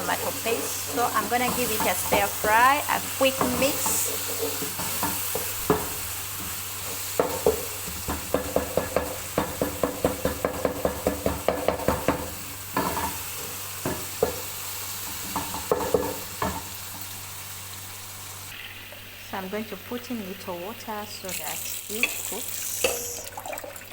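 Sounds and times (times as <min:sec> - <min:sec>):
sauce sizzling in a pan: 0:00.0 - 0:19.4, 0:21.2 - 0:23.9
utensil knocking against pan: 0:01.2 - 0:02.7, 0:07.2 - 0:13.1.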